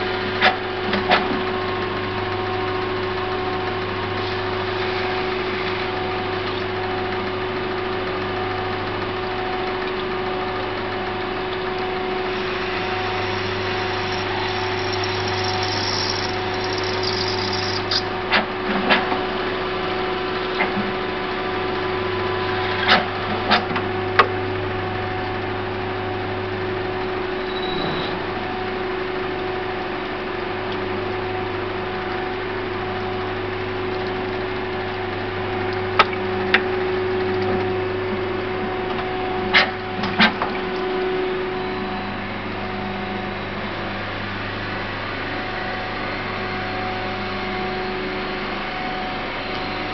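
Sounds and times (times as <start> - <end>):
lathe humming: 1.7 - 18.3.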